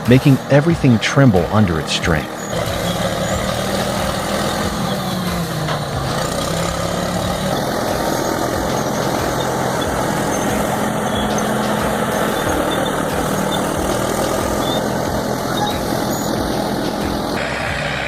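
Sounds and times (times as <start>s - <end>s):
bulldozer diesel engine running: 0.0s - 18.0s.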